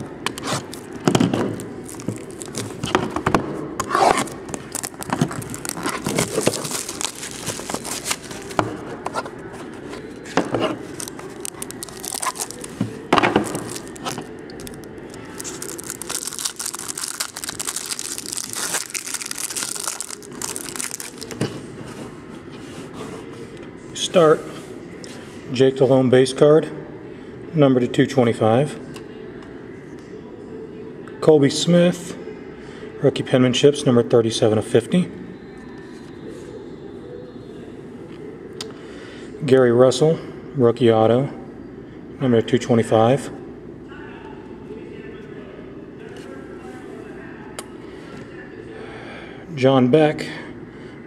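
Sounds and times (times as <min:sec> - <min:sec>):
plastic wrapping crinkling: 0:00.6 - 0:03.1, 0:04.1 - 0:08.6, 0:10.6 - 0:21.6
plastic wrapping ripping: 0:01.6 - 0:03.0, 0:04.1 - 0:08.6, 0:10.8 - 0:21.5.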